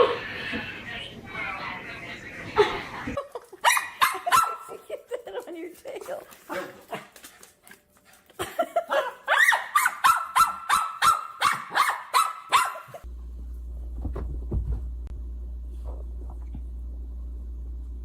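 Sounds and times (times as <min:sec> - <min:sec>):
steady low hum: 0:13.0 - 0:18.0.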